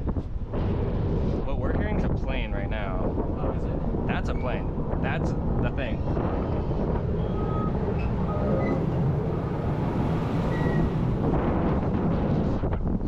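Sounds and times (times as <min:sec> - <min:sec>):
distant engine drone: 0:00.0 - 0:13.0
wind rumbling on microphone: 0:00.0 - 0:13.0
truck reversing alarm beeps: 0:07.1 - 0:09.3, 0:10.3 - 0:11.1.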